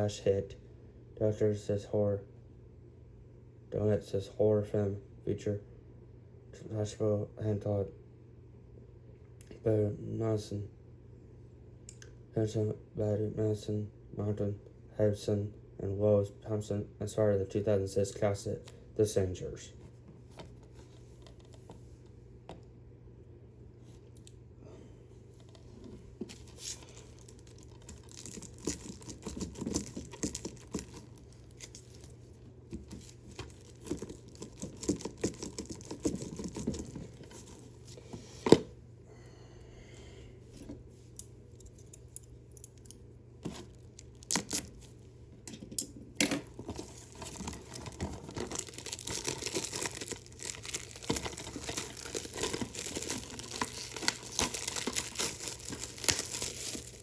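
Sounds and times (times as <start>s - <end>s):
plastic wrap crinkling: 26.2s - 37.8s, 46.4s - 57.0s.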